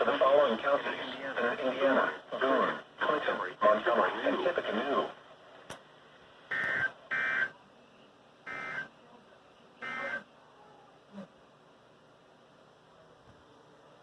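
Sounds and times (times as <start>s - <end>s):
two-tone digital data bursts: 6.5s - 7.5s, 8.5s - 8.9s, 9.8s - 10.2s.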